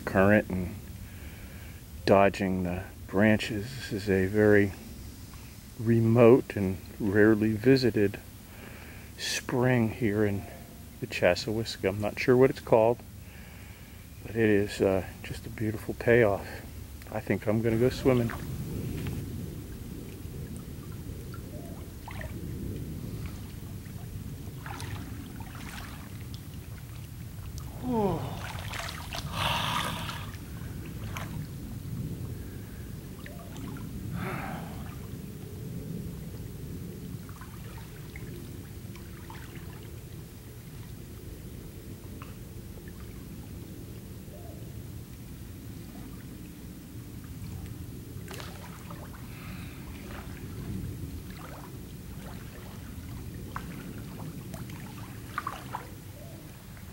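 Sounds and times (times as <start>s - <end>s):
low steady rumble: 0.0s - 56.9s
steady low rumble: 14.0s - 39.0s
water splashing and dripping: 17.9s - 35.4s, 37.1s - 41.0s, 47.2s - 56.9s.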